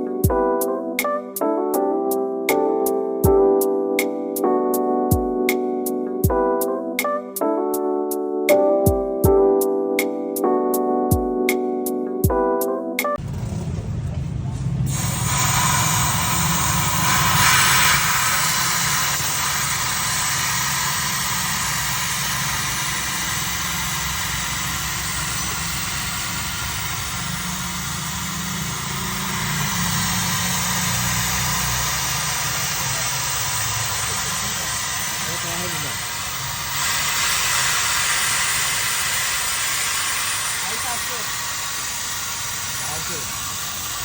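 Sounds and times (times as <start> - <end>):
car engine idling: 13.2 - 44.0
ac compressor hiss: 13.3 - 44.0.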